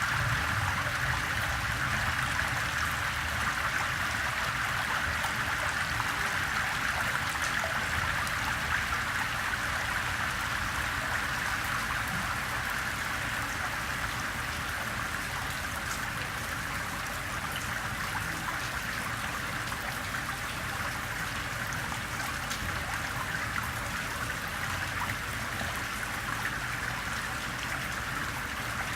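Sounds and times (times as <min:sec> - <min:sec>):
rainwater running off street: 0:00.0 - 0:28.9
rain drop ticks: 0:22.2 - 0:23.7.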